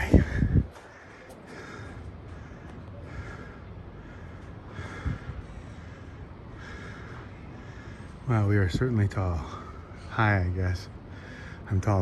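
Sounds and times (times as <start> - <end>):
man breathing heavily: 0.0 - 8.3, 10.9 - 11.7
steady background hiss: 0.0 - 12.0.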